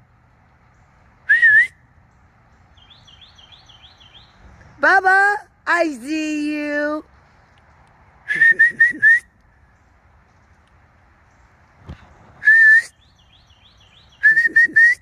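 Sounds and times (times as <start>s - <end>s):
person whistling: 1.3s - 1.8s, 8.3s - 9.3s, 12.4s - 12.9s, 14.2s - 15.0s.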